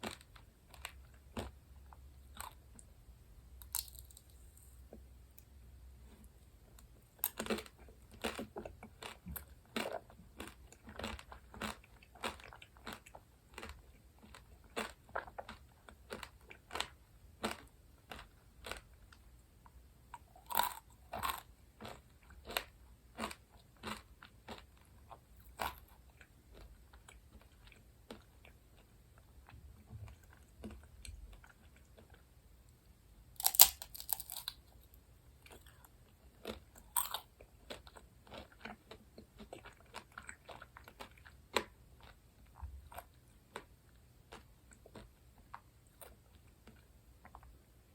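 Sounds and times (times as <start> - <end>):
crisp crunching and chewing: 0.0 - 2.8, 3.6 - 4.7, 6.8 - 19.1, 20.2 - 32.2, 33.4 - 43.7.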